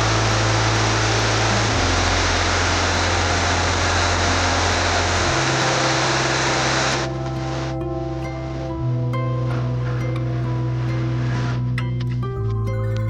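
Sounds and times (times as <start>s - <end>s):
waterfall roaring: 0.0s - 7.7s
low sustained music notes: 0.0s - 13.0s.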